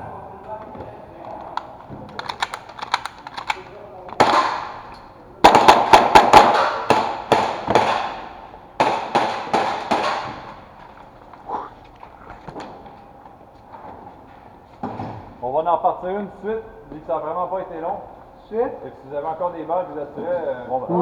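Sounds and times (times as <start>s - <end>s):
airsoft guns firing sharp cracks: 2.1s - 10.8s.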